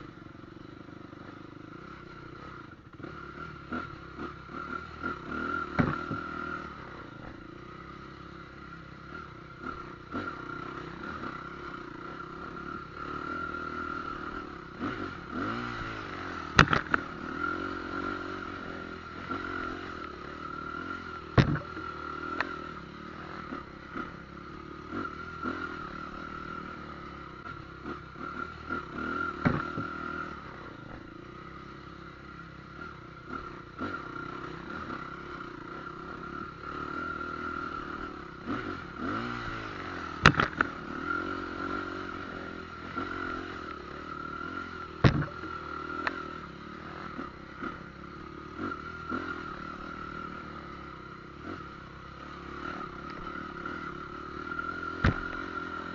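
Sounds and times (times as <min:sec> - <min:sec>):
motorcycle engine running: 0:00.0 - 0:55.9
sharp knocks and clatters: 0:16.6 - 0:17.1, 0:21.4 - 0:21.8, 0:45.0 - 0:45.4.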